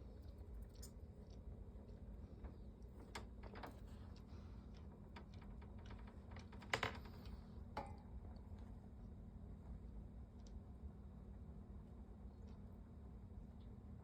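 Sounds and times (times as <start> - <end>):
faint clicks and scratches: 0.0 - 8.8
low steady hum: 0.0 - 14.0.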